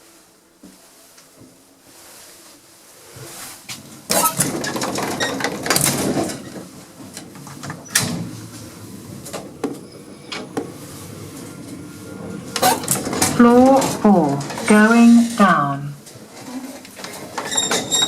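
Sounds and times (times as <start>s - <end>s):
gate rattling and sliding: 4.1s - 14.9s, 16.2s - 18.0s
metal lift gate clanking: 4.1s - 15.2s, 16.3s - 18.0s
lift mechanism clicks and clunks: 4.1s - 15.4s.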